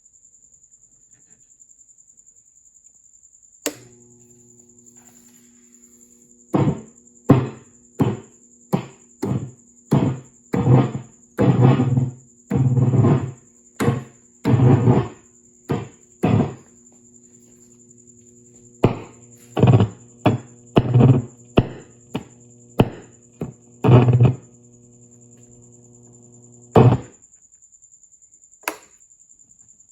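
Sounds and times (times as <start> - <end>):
mains hum buzzing: 0.0 - 29.9
loud amplifier thumps and bursts: 6.5 - 16.7, 18.6 - 26.1, 26.7 - 27.1.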